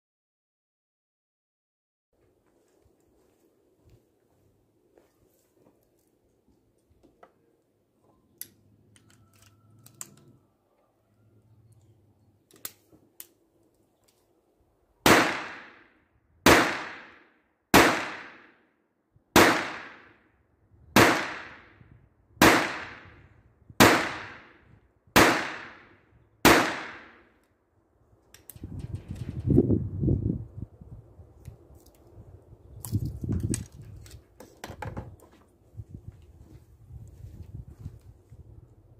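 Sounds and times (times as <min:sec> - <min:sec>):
pistol shots with ringing echo: 0:15.0 - 0:15.9, 0:16.5 - 0:18.6, 0:19.4 - 0:20.2, 0:21.0 - 0:21.7, 0:22.4 - 0:23.2, 0:23.8 - 0:24.6, 0:25.2 - 0:27.3.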